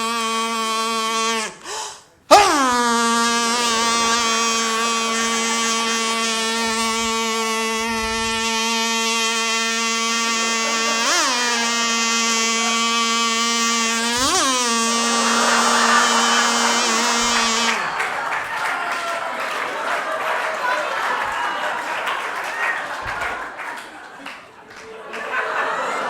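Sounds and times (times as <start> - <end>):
chainsaw engine revving: 0.0 - 18.8.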